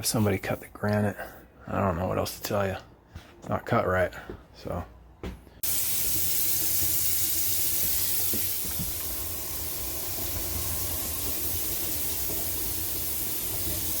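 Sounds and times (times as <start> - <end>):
faucet running into sink: 5.6 - 14.0.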